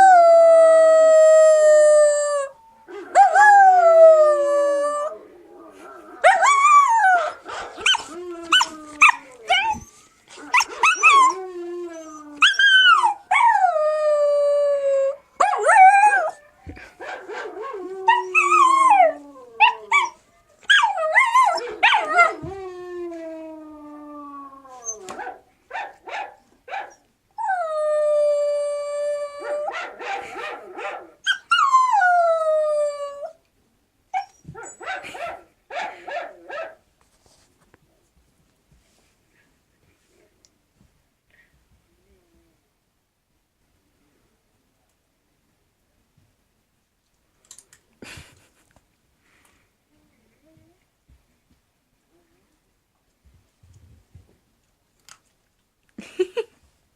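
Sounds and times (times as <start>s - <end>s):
puppy howling and yipping: 6.2s - 16.7s, 17.4s - 22.8s.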